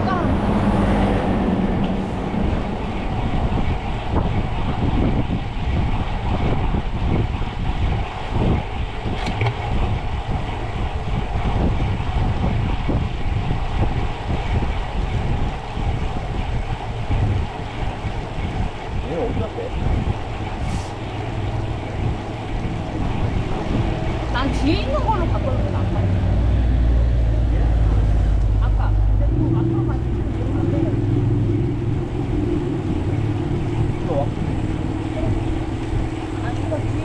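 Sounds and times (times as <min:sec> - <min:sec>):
bicycle tyre and road noise: 0:00.0 - 0:37.0
wind buffeting microphone: 0:00.0 - 0:37.0.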